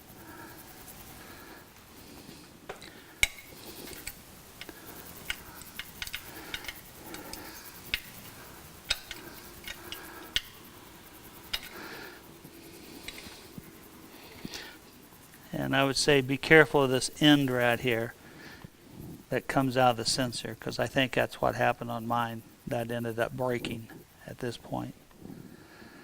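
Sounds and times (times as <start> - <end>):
hand tool tightening metal nuts: 2.8 - 11.9.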